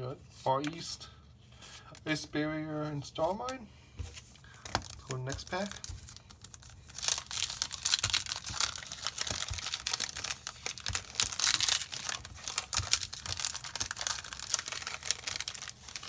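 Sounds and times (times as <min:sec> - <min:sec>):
foil wrapper tearing and crinkling: 0:04.6 - 0:16.0.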